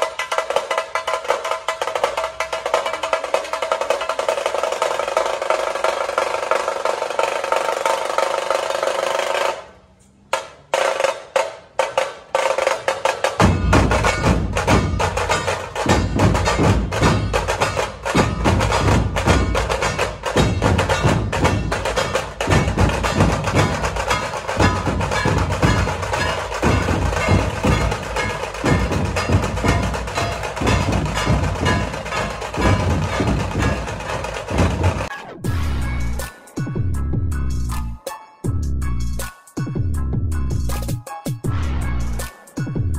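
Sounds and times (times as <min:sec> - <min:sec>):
fast sharp snare drum strokes: 0:00.0 - 0:09.7, 0:10.4 - 0:35.1
deep barrel drums: 0:10.8 - 0:36.2.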